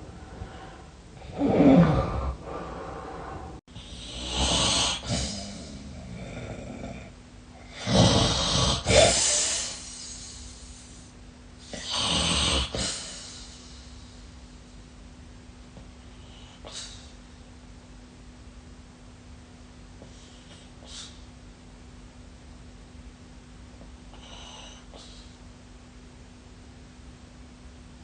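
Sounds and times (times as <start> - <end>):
hissing breaths: 0.0 - 5.9
person snoring heavily: 0.0 - 10.3, 11.6 - 13.5.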